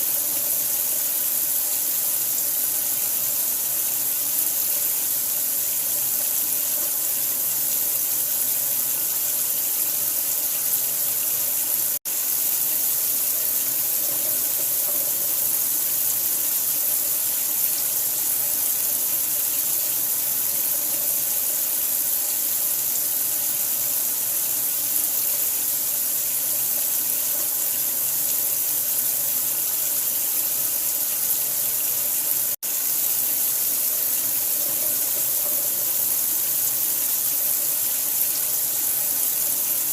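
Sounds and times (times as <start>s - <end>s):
running water hiss: 0.0s - 39.9s.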